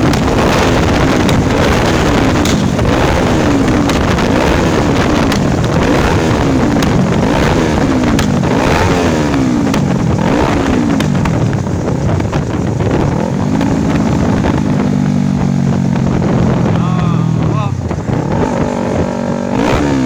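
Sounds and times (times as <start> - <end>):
motorcycle engine revving: 0.0 - 20.0.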